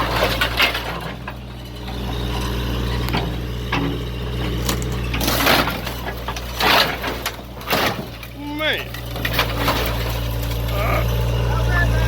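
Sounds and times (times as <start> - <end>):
low engine hum: 0.0 - 12.0
glass cracking and crunching: 4.6 - 11.1.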